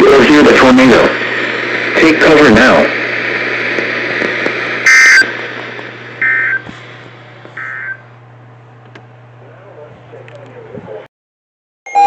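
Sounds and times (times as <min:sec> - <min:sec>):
radio hiss: 0:00.0 - 0:08.0
steady low hum: 0:00.0 - 0:11.1
warbling digital buzzes: 0:06.2 - 0:06.6.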